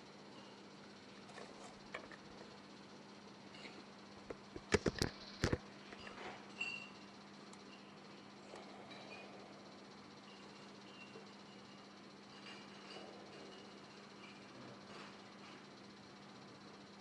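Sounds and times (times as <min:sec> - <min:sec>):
hard objects clicking and knocking: 0:04.2 - 0:06.2.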